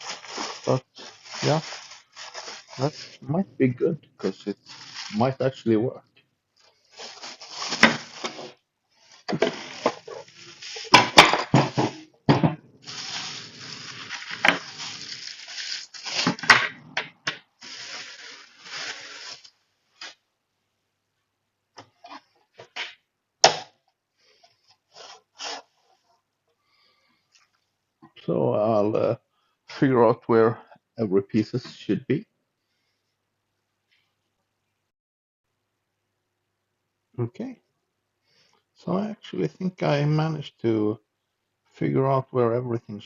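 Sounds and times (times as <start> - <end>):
packaging rustling: 0.0 - 3.2, 4.5 - 5.3, 6.6 - 12.0, 12.8 - 16.6, 17.6 - 20.1.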